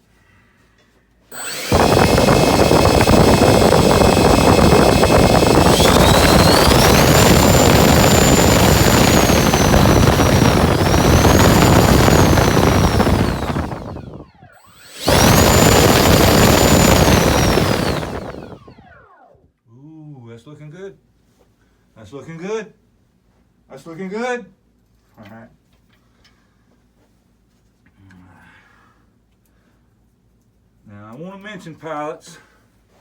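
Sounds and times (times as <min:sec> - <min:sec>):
electric ducted fan whining: 0:01.3 - 0:19.4.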